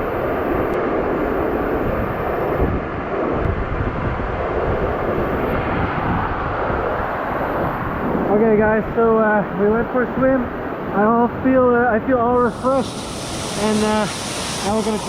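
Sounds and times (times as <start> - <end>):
waterfall roaring: 12.4 - 15.0.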